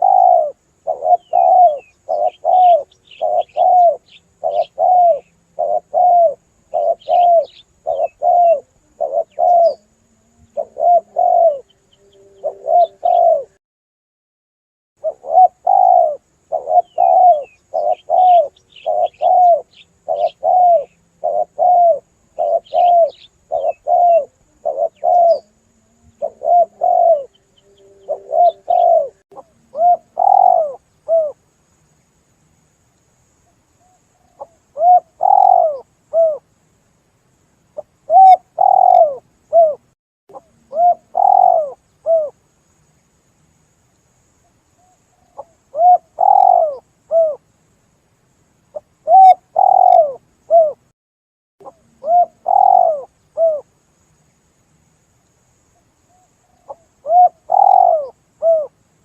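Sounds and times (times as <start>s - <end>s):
dove cooing: 0.0s - 13.6s, 15.0s - 31.4s, 33.8s - 36.4s, 37.8s - 42.4s, 44.8s - 47.4s, 48.8s - 50.9s, 51.6s - 53.7s, 56.1s - 58.7s.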